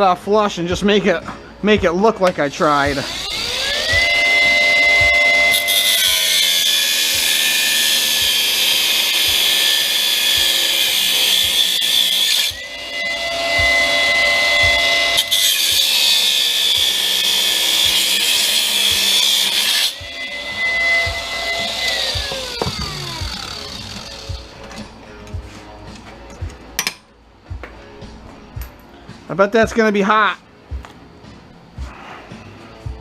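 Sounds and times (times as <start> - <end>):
rotary tool high whine: 2.5 - 24.8
rotary tool grinding steel: 2.6 - 24.6.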